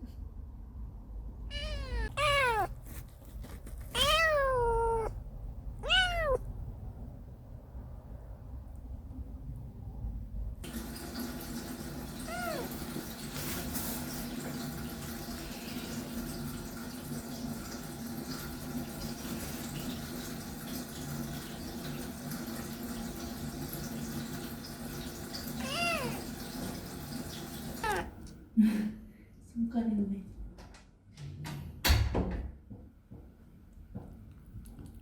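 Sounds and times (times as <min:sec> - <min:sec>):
kitten meowing: 0:01.5 - 0:02.8, 0:03.9 - 0:05.2, 0:05.8 - 0:06.5, 0:12.2 - 0:12.7, 0:25.6 - 0:26.3, 0:27.8 - 0:28.2
tap water running: 0:10.6 - 0:28.3.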